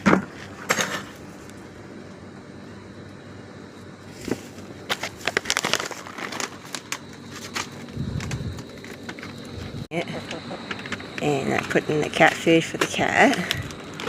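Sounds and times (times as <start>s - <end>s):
dry kibble clicking and rattling: 4.9s - 14.0s.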